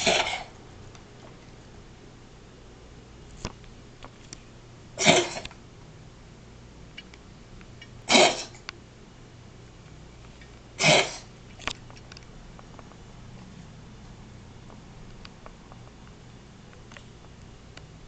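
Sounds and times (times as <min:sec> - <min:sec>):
cat coughing: 0:00.0 - 0:00.6, 0:05.0 - 0:05.5, 0:08.1 - 0:08.6, 0:10.8 - 0:11.3.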